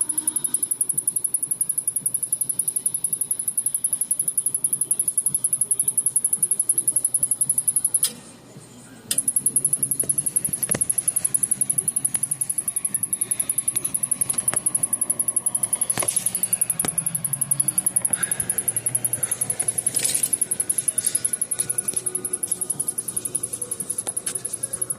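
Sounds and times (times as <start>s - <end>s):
television ticking rapidly: 0.0s - 8.2s, 9.1s - 24.9s.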